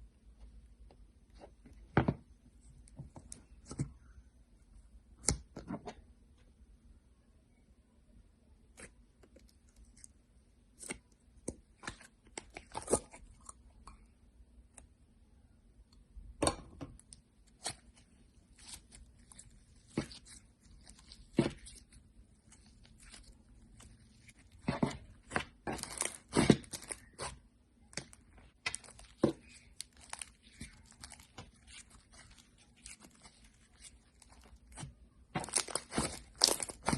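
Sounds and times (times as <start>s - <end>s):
crunchy slime crackling: 17.5s - 36.9s.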